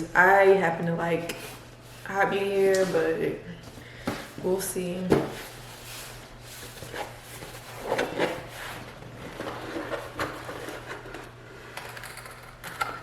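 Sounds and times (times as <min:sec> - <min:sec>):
cardboard scraping and rustling: 0:05.1 - 0:11.3.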